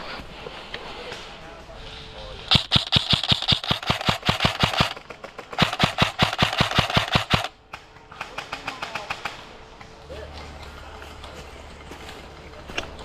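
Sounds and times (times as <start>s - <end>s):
airsoft rifle automatic fire: 2.5s - 7.6s.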